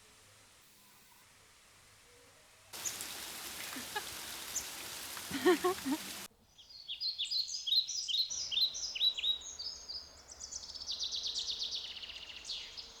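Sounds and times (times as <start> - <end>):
bird trilling: 2.8 - 6.3
birds chirping: 2.8 - 6.3.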